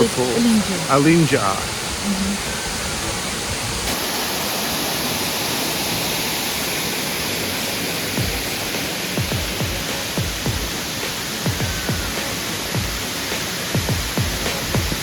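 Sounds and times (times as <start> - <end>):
waterfall rushing: 0.0 - 15.0
electronic music with bass beats: 8.2 - 8.4, 9.2 - 15.0.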